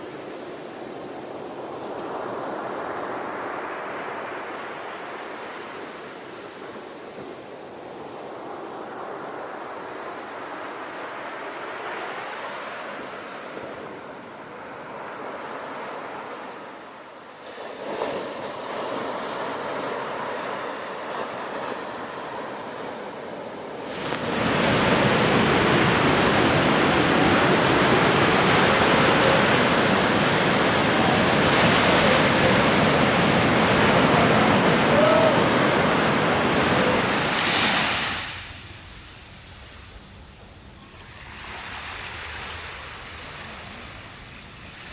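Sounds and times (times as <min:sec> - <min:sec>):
waves washing on shore: 0:00.0 - 0:44.9
breaking surf: 0:17.4 - 0:38.8.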